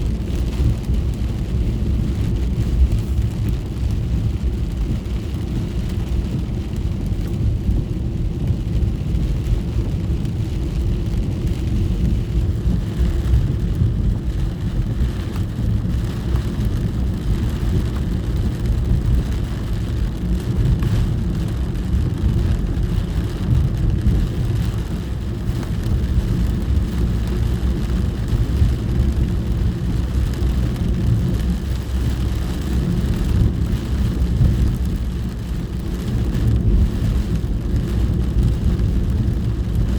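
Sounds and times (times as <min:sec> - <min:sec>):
car interior rumble: 0:00.0 - 0:39.9
rain and wet road hiss: 0:00.0 - 0:39.9.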